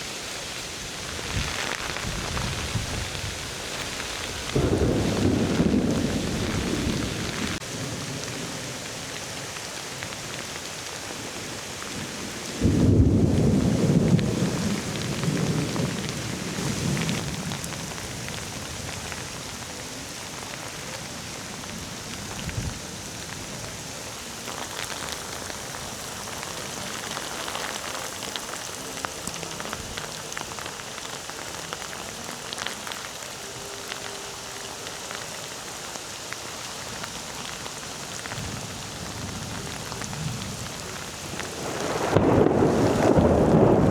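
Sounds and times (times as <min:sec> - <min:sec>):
rain falling steadily: 0:00.0 - 0:43.9
thunder rumbling: 0:01.0 - 0:09.2, 0:12.0 - 0:19.6, 0:38.2 - 0:43.9.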